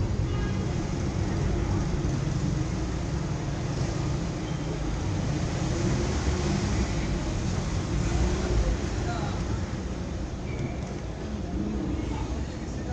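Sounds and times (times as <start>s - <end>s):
passing cars rumbling: 0.0s - 10.2s.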